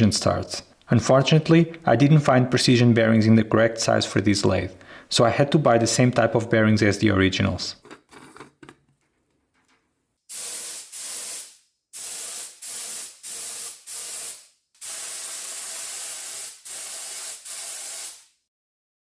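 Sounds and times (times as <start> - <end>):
aerosol spray hissing: 10.3 - 18.4.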